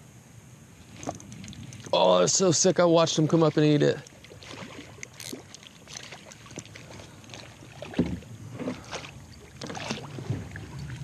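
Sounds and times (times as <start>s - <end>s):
fish thrashing water splashing: 4.1s - 11.0s.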